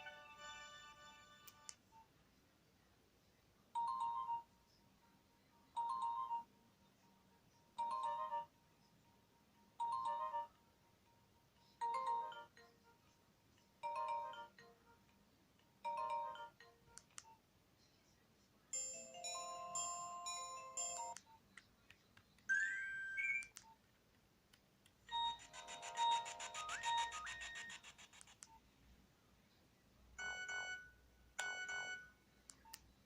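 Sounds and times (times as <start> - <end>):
phone ringtone chime: 7.8 - 8.5, 9.8 - 10.5, 13.8 - 14.7, 18.8 - 21.2, 25.1 - 27.8, 30.2 - 32.2.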